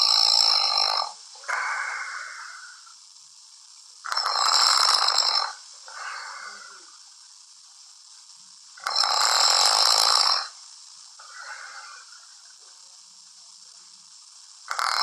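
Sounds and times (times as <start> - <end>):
man snoring: 0.0 - 2.8, 4.1 - 7.0, 8.8 - 10.6, 11.2 - 12.3, 14.7 - 15.0
soft breath: 5.9 - 7.0.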